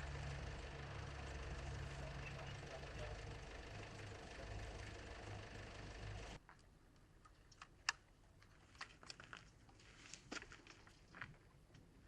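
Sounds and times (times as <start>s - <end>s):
vehicle engine idling: 0.0s - 6.4s.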